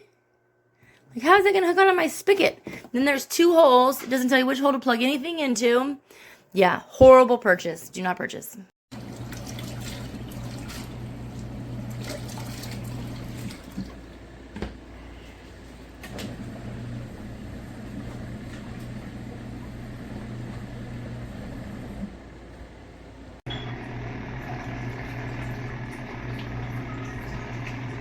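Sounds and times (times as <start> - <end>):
water sloshing in tub: 8.9 - 14.2
washing machine motor humming: 8.9 - 28.0.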